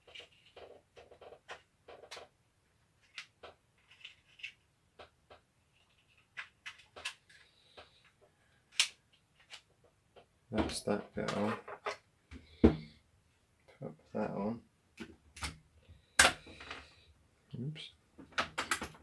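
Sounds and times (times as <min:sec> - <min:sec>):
plastic parts clicking and rustling: 0:00.0 - 0:12.1, 0:15.0 - 0:17.0, 0:18.2 - 0:19.0.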